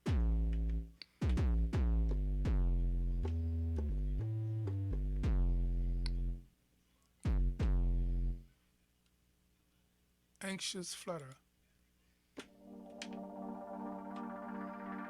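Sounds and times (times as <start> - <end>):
deep punchy synth bass notes: 0.0 - 0.8, 1.4 - 6.4, 7.3 - 8.4.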